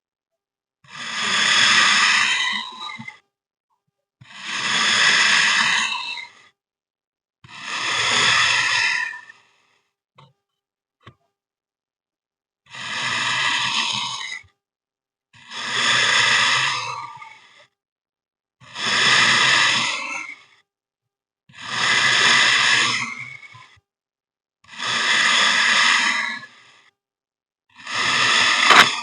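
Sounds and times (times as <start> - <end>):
kinetic sand being cut: 28.3 - 29.0.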